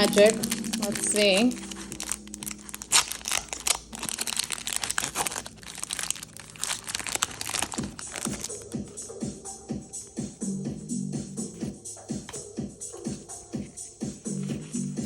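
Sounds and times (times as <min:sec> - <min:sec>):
foil wrapper crinkling: 0:00.0 - 0:08.7.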